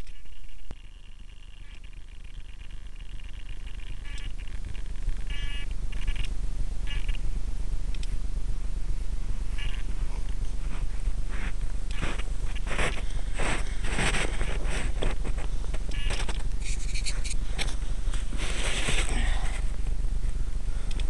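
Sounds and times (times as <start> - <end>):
scraping rustling noises: 9.6 - 19.9.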